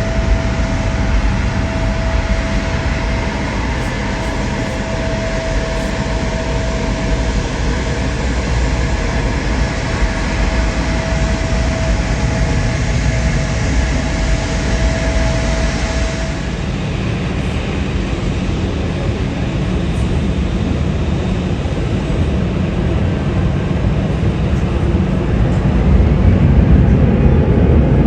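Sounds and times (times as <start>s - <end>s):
jet engines rumbling: 0.0s - 28.0s
steady engine whine: 0.0s - 28.0s.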